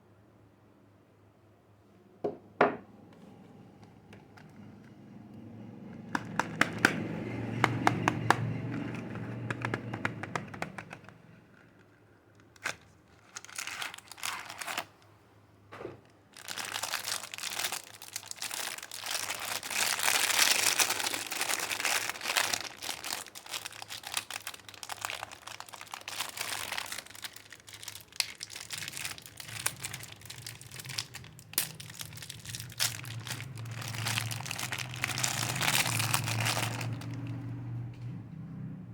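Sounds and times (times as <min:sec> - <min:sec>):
wrapper crinkling and tearing: 0:06.0 - 0:07.1, 0:07.7 - 0:15.1, 0:16.3 - 0:37.5.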